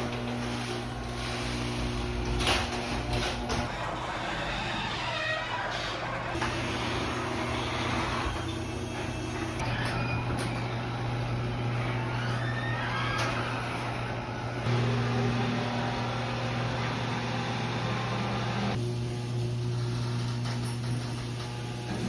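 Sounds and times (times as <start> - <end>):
rollers scraping and squeaking: 0.0 - 14.7
garage door opener motor hum: 0.0 - 22.0.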